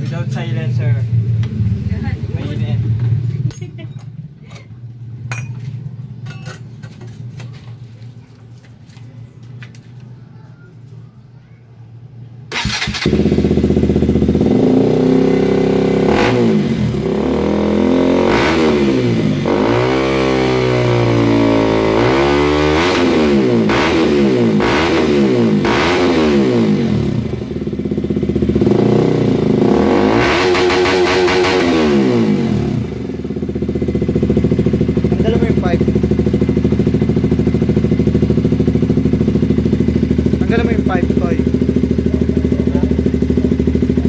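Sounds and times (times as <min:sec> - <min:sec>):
motorcycle engine revving: 0:12.5 - 0:44.0.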